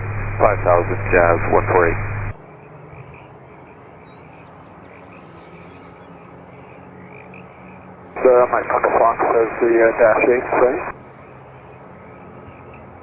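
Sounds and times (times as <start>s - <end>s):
radio hiss: 0.0s - 2.4s, 8.2s - 11.0s.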